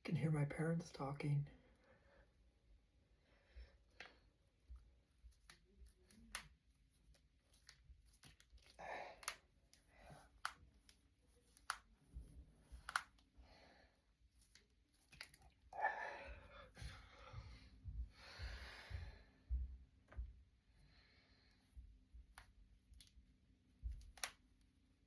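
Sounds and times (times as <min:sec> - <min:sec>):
knuckles cracking: 0:05.4 - 0:11.9, 0:12.8 - 0:13.2, 0:14.4 - 0:15.6.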